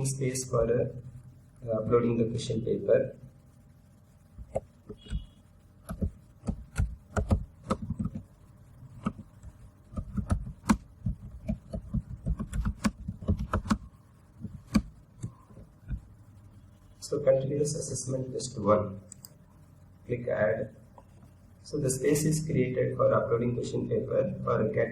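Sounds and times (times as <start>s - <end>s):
typing on a computer keyboard: 5.9s - 8.3s, 9.9s - 16.0s.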